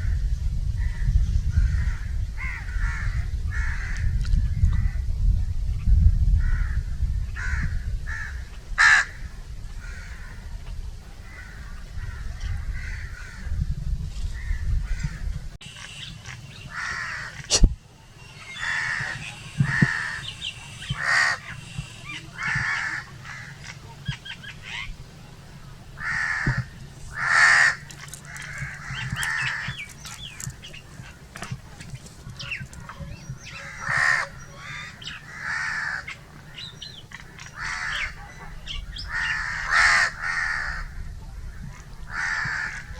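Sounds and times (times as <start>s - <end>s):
low rumble: 0.0s - 15.6s
crows cawing: 1.6s - 4.1s, 7.4s - 10.5s, 11.2s - 13.5s, 14.4s - 17.4s, 18.4s - 23.8s, 26.0s - 31.2s, 33.6s - 41.0s, 42.1s - 42.9s.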